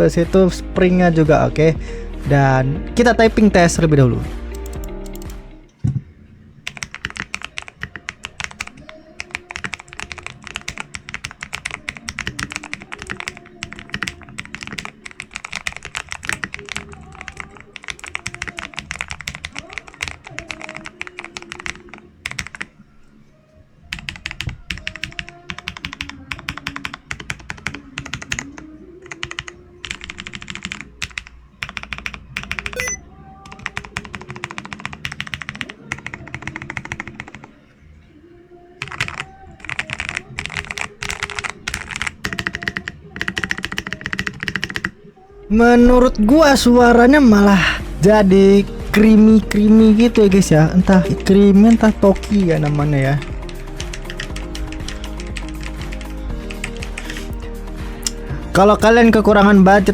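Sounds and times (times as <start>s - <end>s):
fast typing on mechanical keyboard: 4.5s - 5.4s, 6.6s - 22.7s, 23.9s - 37.5s, 38.8s - 45.0s, 49.0s - 57.4s.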